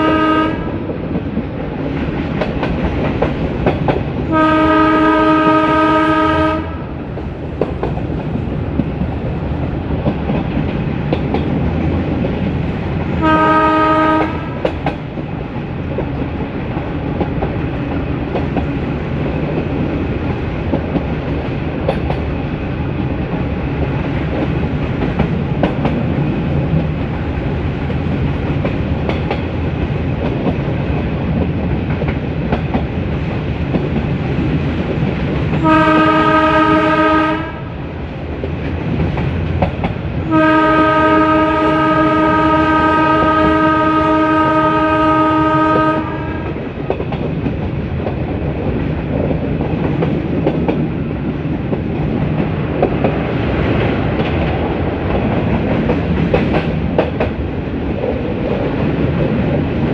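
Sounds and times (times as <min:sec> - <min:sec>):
locomotive horn blasts: 0:00.0 - 0:00.8, 0:04.3 - 0:06.9, 0:13.2 - 0:14.6, 0:35.6 - 0:37.7, 0:40.3 - 0:46.6
train wheels clattering: 0:00.4 - 0:05.8, 0:07.0 - 0:37.6, 0:38.2 - 0:41.6, 0:45.8 - 0:59.9.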